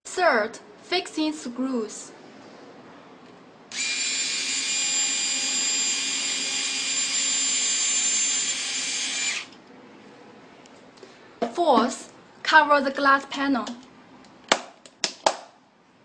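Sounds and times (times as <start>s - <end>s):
electric screwdriver whining: 3.7s - 9.6s.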